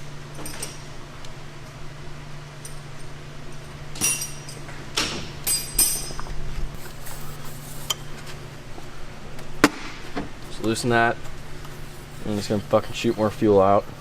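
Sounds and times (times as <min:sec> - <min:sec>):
steady low hum: 0:00.0 - 0:14.0
metal hand tools clinking: 0:05.5 - 0:06.2.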